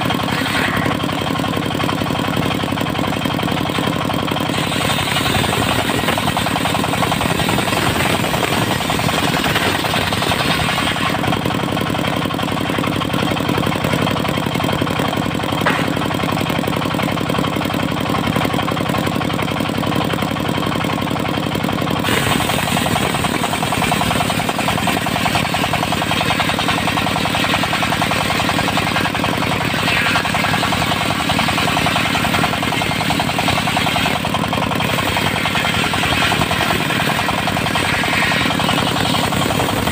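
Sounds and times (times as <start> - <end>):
saw cutting wood: 0.0 - 13.8, 15.6 - 16.3, 22.0 - 39.9
knocking clatter: 0.0 - 16.9, 22.0 - 39.9
diesel engine running: 0.0 - 39.9.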